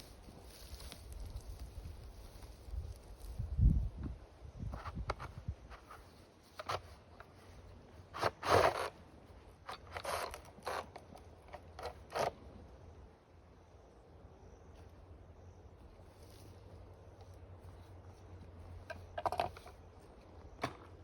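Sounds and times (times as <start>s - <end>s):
scrapes and rustles of handling: 0.0s - 3.6s, 4.7s - 12.4s, 15.8s - 21.0s.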